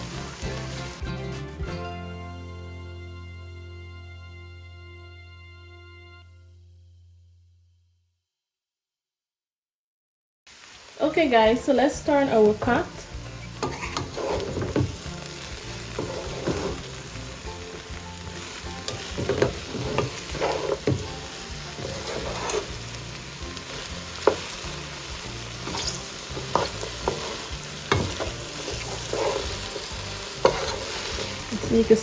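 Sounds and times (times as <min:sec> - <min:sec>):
okra sizzling in a pot: 0:00.0 - 0:01.0, 0:10.5 - 0:32.0
utensil scraping and knocking pot: 0:13.5 - 0:15.0, 0:15.8 - 0:16.9, 0:18.8 - 0:22.8, 0:25.6 - 0:32.0.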